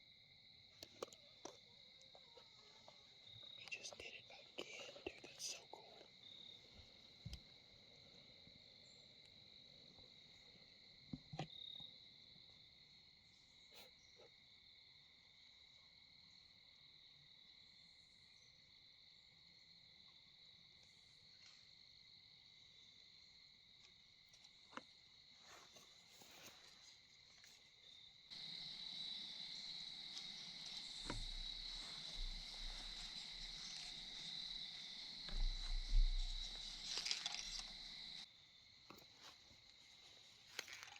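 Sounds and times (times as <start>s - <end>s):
crickets chirping: 0.0s - 40.9s
faint ticks and rustles: 0.7s - 12.0s, 20.7s - 22.0s, 23.8s - 40.9s.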